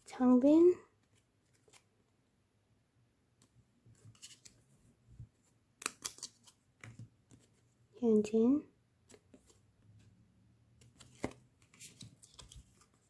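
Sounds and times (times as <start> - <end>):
cards sliding and clicking: 3.4 - 4.6, 5.8 - 7.6, 10.8 - 13.0.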